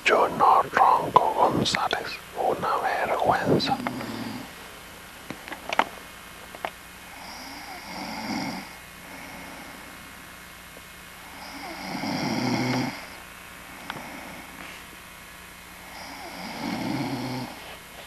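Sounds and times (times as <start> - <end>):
man snoring: 0.1 - 4.6, 7.0 - 10.1, 11.2 - 14.6, 15.8 - 17.6.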